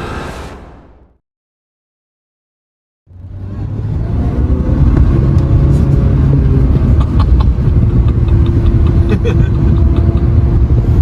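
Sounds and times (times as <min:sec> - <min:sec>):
car engine rumbling: 0:03.1 - 0:11.0.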